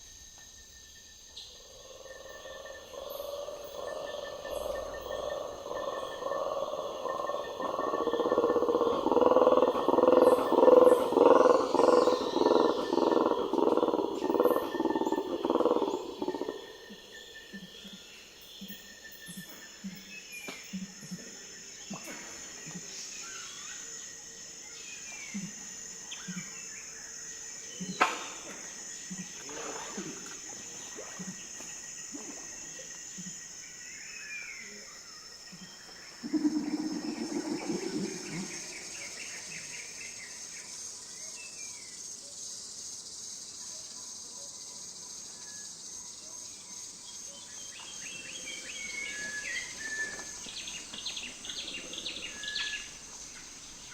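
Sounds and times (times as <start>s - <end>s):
high insect tones: 0.0s - 53.9s
croaking animal chorus: 1.4s - 18.8s, 27.7s - 33.9s, 34.6s - 40.2s.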